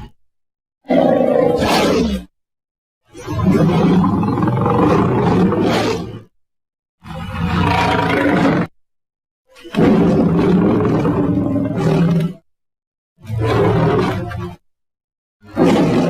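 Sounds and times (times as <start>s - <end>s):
big cat roaring: 0.8s - 2.3s, 3.4s - 6.2s, 7.1s - 8.7s, 9.7s - 12.4s, 13.3s - 14.3s, 15.6s - 16.0s.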